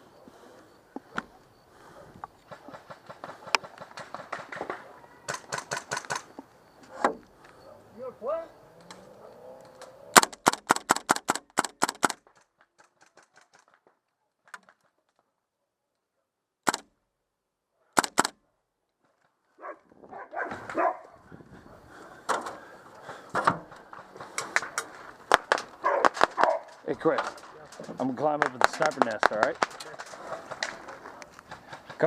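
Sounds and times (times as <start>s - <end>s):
airsoft guns firing: 2.5s - 6.3s, 10.2s - 12.3s, 16.7s - 16.9s, 18.0s - 18.3s
rustling: 19.0s - 32.0s.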